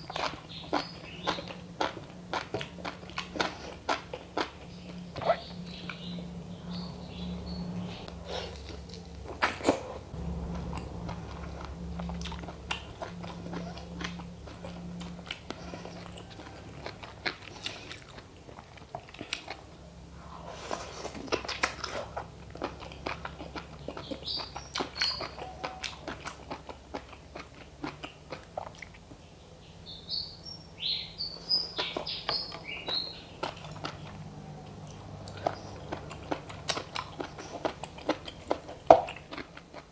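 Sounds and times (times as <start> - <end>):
chewing and biting food: 0.0 - 6.4, 7.8 - 29.2, 31.8 - 39.9
low hum: 0.0 - 26.0.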